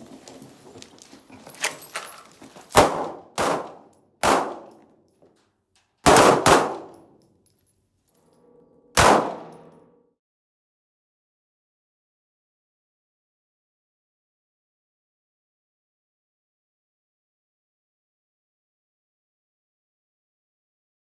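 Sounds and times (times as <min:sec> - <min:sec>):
handgun shots: 0:02.7 - 0:04.8, 0:06.0 - 0:07.1, 0:09.0 - 0:09.7.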